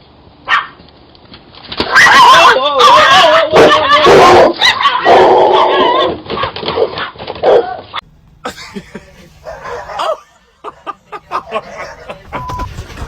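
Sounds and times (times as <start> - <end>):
dog barking loudly: 0.4 - 0.8, 1.9 - 8.0, 9.4 - 12.2.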